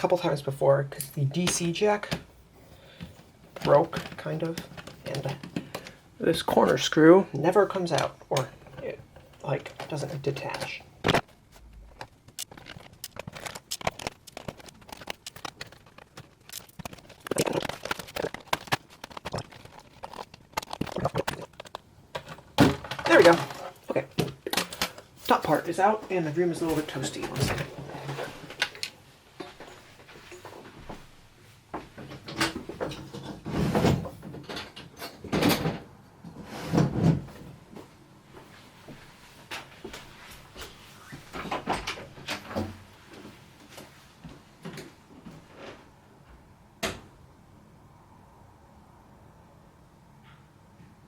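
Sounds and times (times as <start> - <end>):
plastic scraping and rustling: 7.9 - 26.0.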